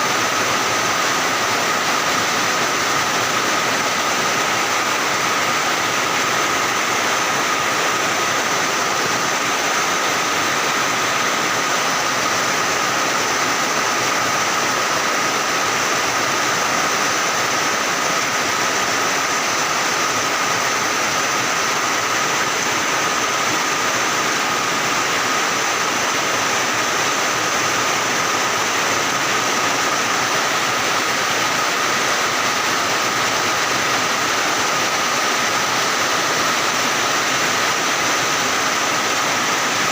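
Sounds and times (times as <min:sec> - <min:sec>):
rain pouring down: 0:00.0 - 0:39.9.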